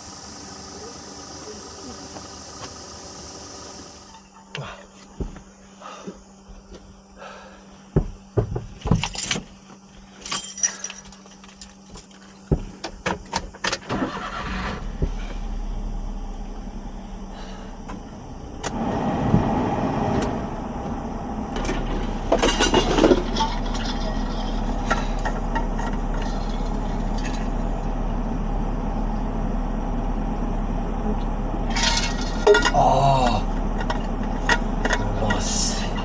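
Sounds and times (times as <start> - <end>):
vehicle engine running: 0.0 - 10.2, 11.2 - 36.0
clinks and rattles: 8.7 - 9.5, 10.2 - 12.4, 21.6 - 27.8, 31.7 - 36.0.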